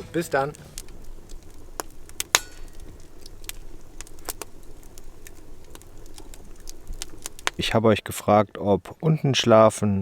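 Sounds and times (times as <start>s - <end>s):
wood fire crackling: 0.0s - 9.8s
sharp pops and snaps: 0.6s - 7.6s.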